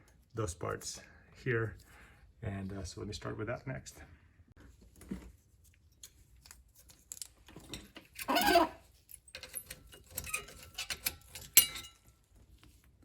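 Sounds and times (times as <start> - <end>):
metal brake parts clinking: 8.4 - 12.1.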